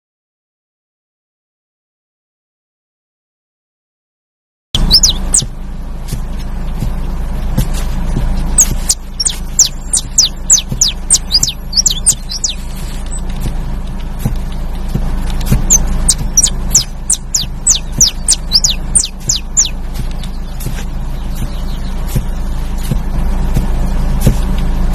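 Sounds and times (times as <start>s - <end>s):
finch singing: 4.8s - 23.5s
steady low hum: 4.8s - 24.9s.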